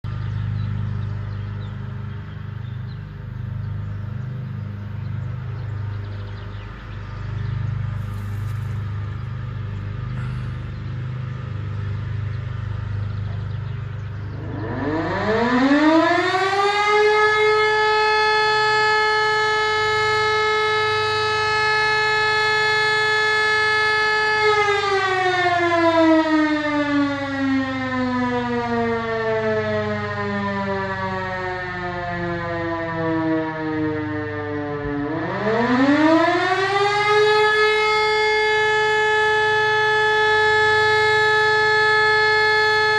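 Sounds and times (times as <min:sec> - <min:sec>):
fire siren winding: 0:14.4 - 0:42.9.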